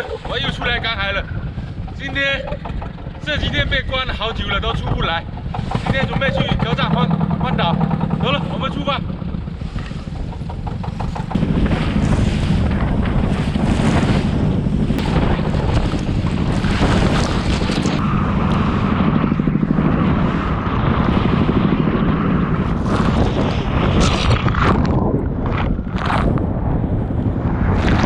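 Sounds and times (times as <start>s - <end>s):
engine running under load: 0.0s - 24.6s
wind buffeting microphone: 0.0s - 28.0s.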